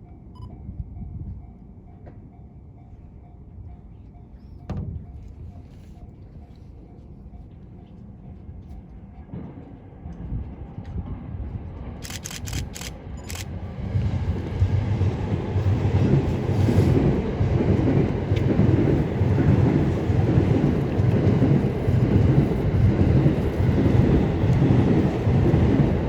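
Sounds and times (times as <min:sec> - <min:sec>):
train rumble: 0:00.0 - 0:26.0
sharp clicks: 0:12.0 - 0:13.5.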